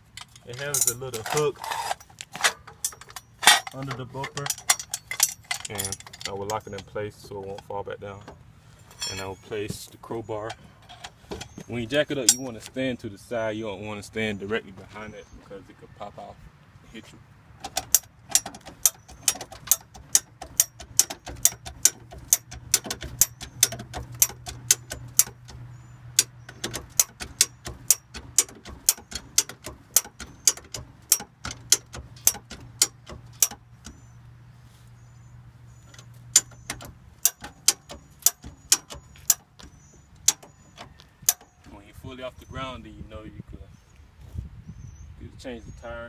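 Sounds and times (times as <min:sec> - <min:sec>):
bumper jack metal clicks: 0:00.0 - 0:08.4, 0:10.4 - 0:12.8, 0:17.6 - 0:34.2, 0:35.7 - 0:41.8.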